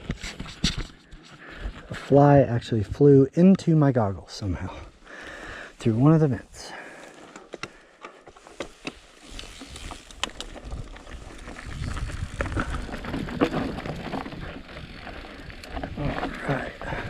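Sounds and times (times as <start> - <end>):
bike tyres rumbling on dirt: 4.7 - 17.0
bike rattling over rocks: 7.0 - 17.0.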